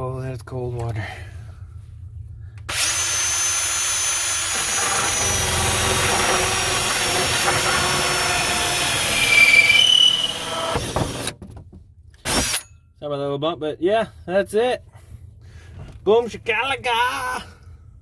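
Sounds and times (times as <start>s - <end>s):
hole saw drilling through plastic: 2.7s - 11.4s, 12.3s - 12.6s.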